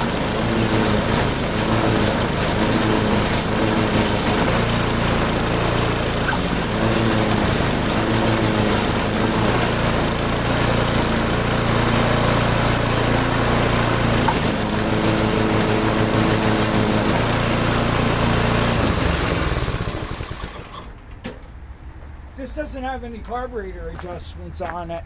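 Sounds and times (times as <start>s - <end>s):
snow blower engine running: 0.0s - 21.0s.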